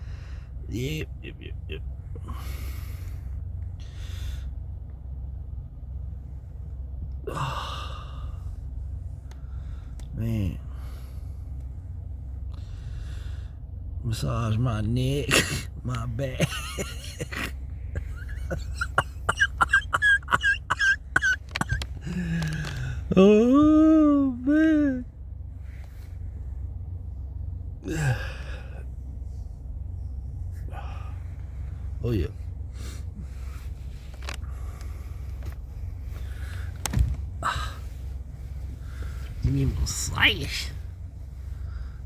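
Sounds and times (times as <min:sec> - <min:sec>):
steady low hum: 0:00.0 - 0:42.0
man making squeaky vocal sounds: 0:00.7 - 0:01.9
man groaning: 0:00.7 - 0:02.4, 0:07.3 - 0:08.2, 0:18.5 - 0:25.1, 0:27.8 - 0:28.8
man breathing out heavily: 0:02.2 - 0:04.6, 0:07.3 - 0:08.5, 0:12.6 - 0:13.7, 0:27.8 - 0:28.9.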